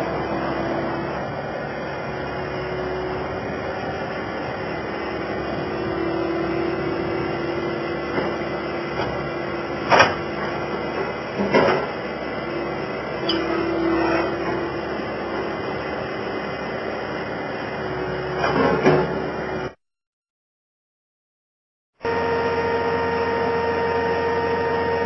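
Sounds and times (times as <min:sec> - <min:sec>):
skid steer engine hum: 0:00.0 - 0:19.8, 0:22.0 - 0:25.0.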